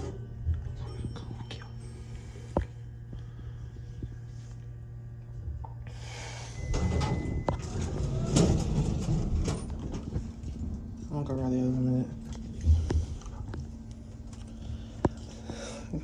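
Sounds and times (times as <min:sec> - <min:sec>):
elevator machinery humming: 0:00.0 - 0:16.0
short beep tone: 0:06.6 - 0:07.6
elevator rattling knocks and clicks: 0:06.6 - 0:11.4.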